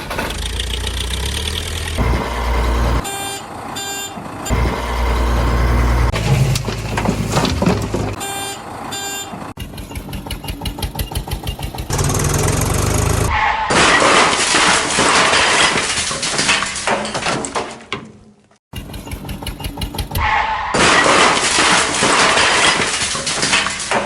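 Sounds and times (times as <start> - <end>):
crash with shattering and clattering: 6.1 - 8.2, 13.2 - 17.9, 20.2 - 24.0.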